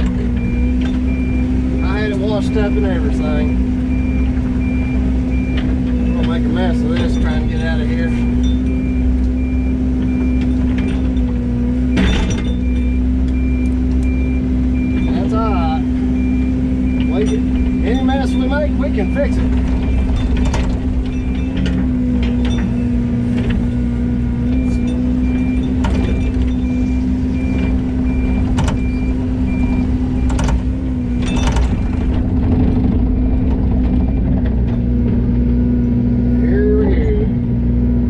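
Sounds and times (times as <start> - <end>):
warning alarm beeping: 0.0 - 35.0
excavator diesel engine running: 0.0 - 38.0
sharp metallic clanks: 10.4 - 12.9, 17.0 - 23.9, 30.2 - 34.9.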